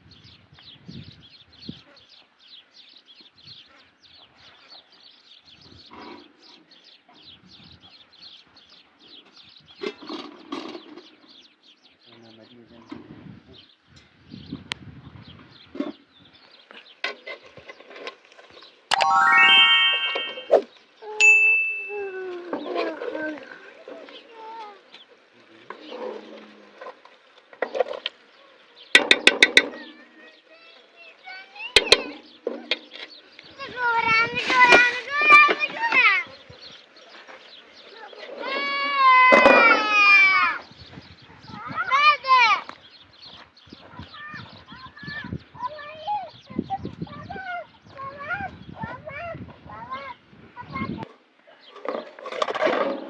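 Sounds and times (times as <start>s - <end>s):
louder lower sound: 18.9s - 20.6s
small birds chirping: 40.6s - 49.0s.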